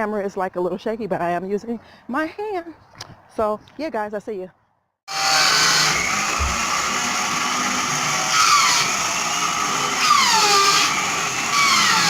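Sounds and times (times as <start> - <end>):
electric sander running: 5.1 - 12.0.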